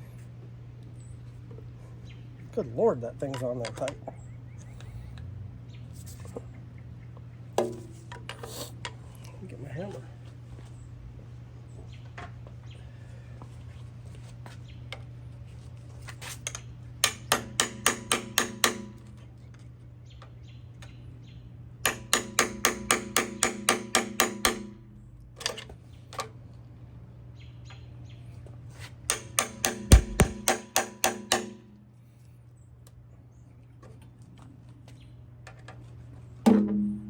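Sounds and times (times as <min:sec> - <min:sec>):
steady low hum: 0:00.0 - 0:33.8
hammer striking metal: 0:17.0 - 0:19.0, 0:21.9 - 0:24.8, 0:29.1 - 0:31.8.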